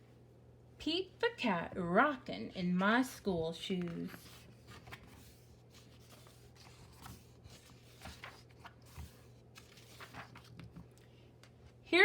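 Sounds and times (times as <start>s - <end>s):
pages rustling: 3.7s - 11.8s.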